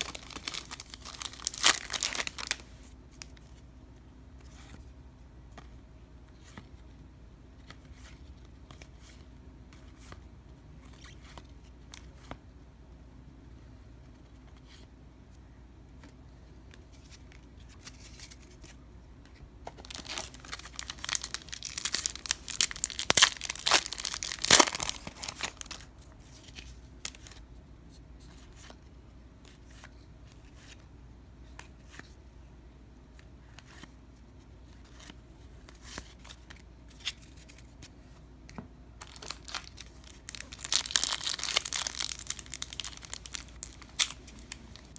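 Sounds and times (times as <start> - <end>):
wrapper tearing and crinkling: 0.0 - 2.6, 19.8 - 25.9, 39.0 - 44.9.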